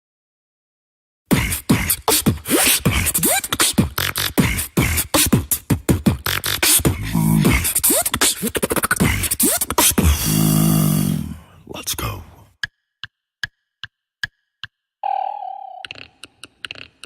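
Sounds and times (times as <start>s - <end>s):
human beatboxing: 1.3s - 12.7s, 15.8s - 17.0s.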